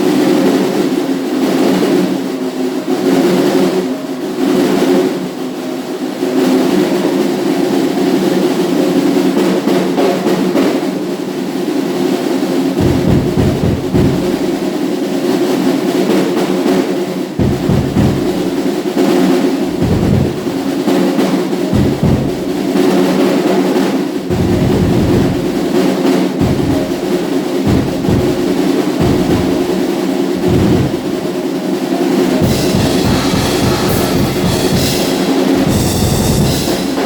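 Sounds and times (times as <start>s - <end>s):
drum kit playing: 0.0s - 37.0s
bass drum bursts: 12.8s - 14.6s, 17.4s - 18.8s, 19.6s - 20.8s, 21.7s - 22.9s, 24.3s - 25.8s, 26.4s - 37.0s.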